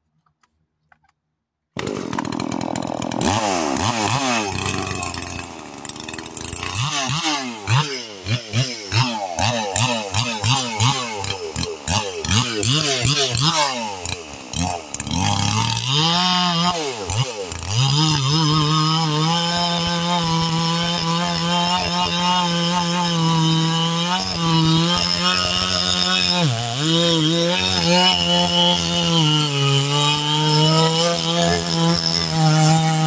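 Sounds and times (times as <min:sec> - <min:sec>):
chainsaw cutting wood: 0:01.7 - 0:33.0.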